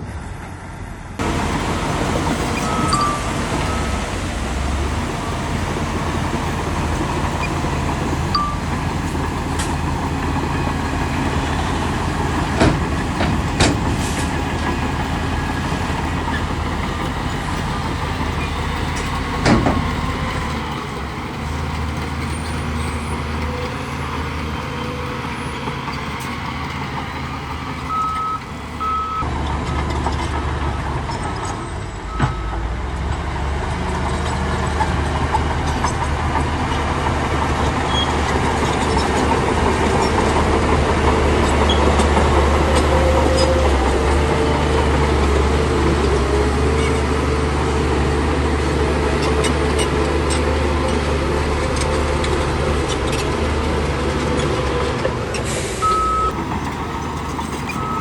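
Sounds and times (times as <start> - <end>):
diesel machinery running: 0.0 - 58.0
metal knocks: 1.2 - 28.9
short beeping tones: 2.6 - 4.0, 8.3 - 8.8, 27.9 - 29.2.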